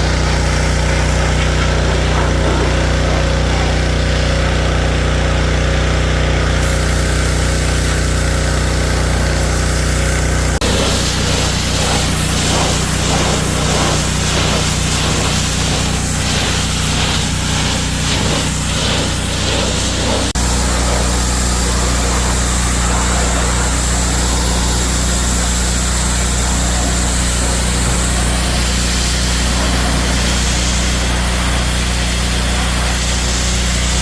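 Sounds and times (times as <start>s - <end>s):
small engine running: 0.0s - 34.0s
hiss: 6.6s - 9.4s, 10.6s - 34.0s.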